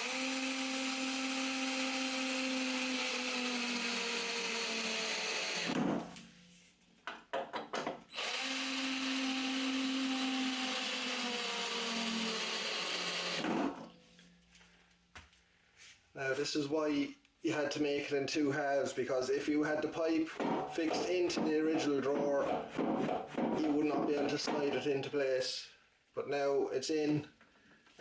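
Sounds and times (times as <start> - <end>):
power drill driving screws: 0.0 - 6.0, 8.1 - 13.9.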